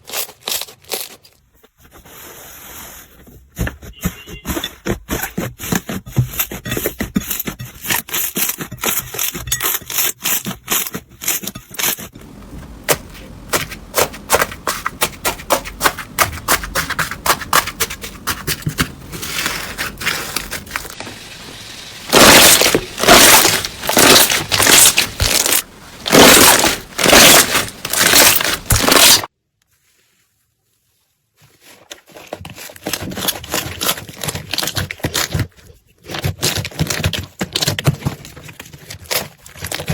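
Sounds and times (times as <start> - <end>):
slime crackling and squishing: 12.8 - 29.3, 31.6 - 37.8.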